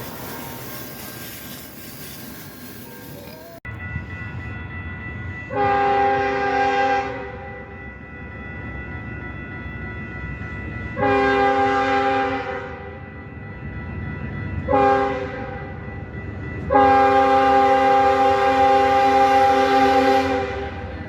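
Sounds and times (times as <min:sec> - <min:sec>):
low train rumble: 0:00.0 - 0:21.0
locomotive air horn chord: 0:05.3 - 0:07.7, 0:11.0 - 0:13.0, 0:14.7 - 0:15.8, 0:16.6 - 0:21.0.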